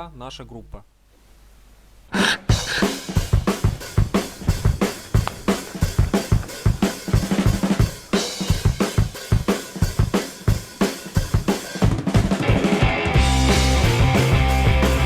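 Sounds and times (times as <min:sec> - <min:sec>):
fast drum beat music: 0:02.4 - 0:15.0.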